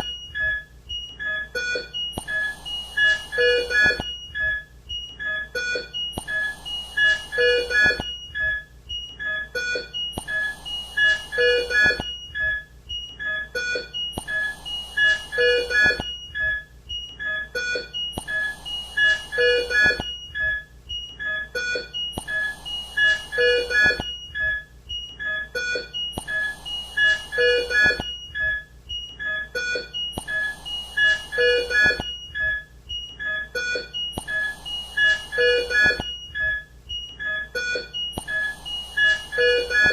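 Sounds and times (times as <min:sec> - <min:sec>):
patient monitor beeping: 0:00.0 - 0:39.9.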